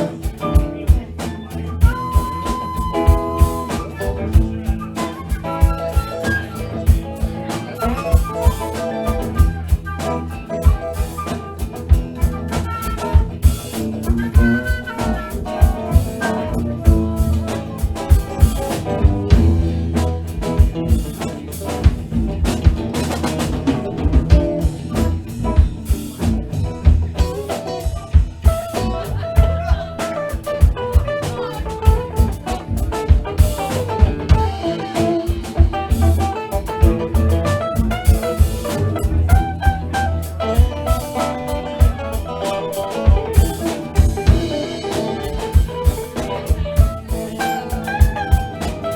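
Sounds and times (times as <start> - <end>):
drum kit beat: 0.0 - 48.9
live jazz blues band: 0.0 - 48.9.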